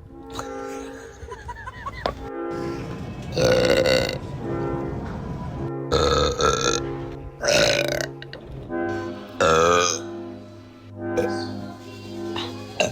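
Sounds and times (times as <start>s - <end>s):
background music: 0.0s - 12.9s
person belching loudly: 3.4s - 4.2s, 5.9s - 6.8s, 7.4s - 8.3s, 9.4s - 10.1s.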